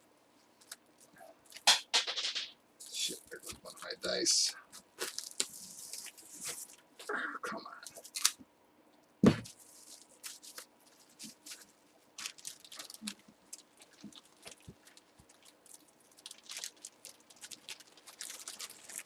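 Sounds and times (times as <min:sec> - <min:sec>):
plastic packaging crinkling: 0:02.8 - 0:07.1, 0:07.8 - 0:08.4, 0:09.4 - 0:19.0.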